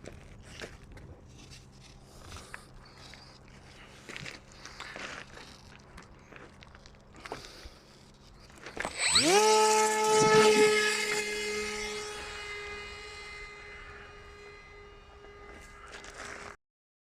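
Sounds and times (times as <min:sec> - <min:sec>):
model plane motor whine: 0:08.0 - 0:16.6.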